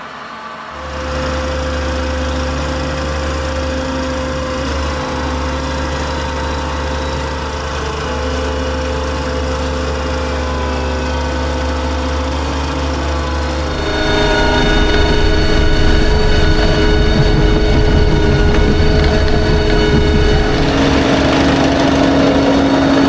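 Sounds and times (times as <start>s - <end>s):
steady whine: 13.5s - 23.0s
farm machinery engine rumbling: 13.6s - 23.0s.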